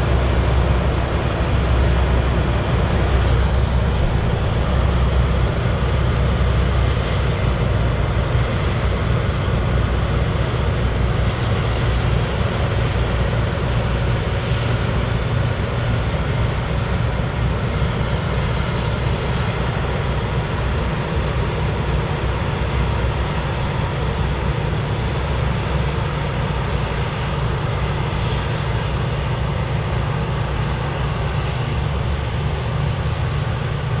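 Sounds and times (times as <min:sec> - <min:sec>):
combine harvester engine drone: 0:00.0 - 0:34.0
threshing machinery rushing: 0:02.6 - 0:06.4.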